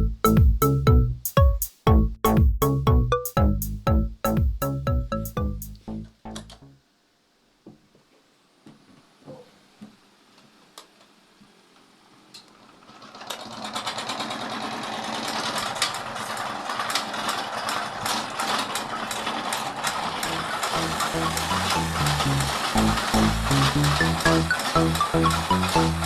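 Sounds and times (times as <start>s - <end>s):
electric fan spinning: 12.6s - 26.0s
objects clattering on fan blades: 12.7s - 26.0s.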